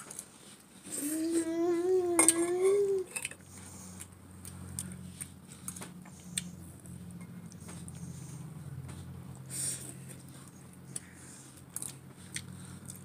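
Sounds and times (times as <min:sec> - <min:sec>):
cutlery clinking on dishes: 0:02.1 - 0:03.4.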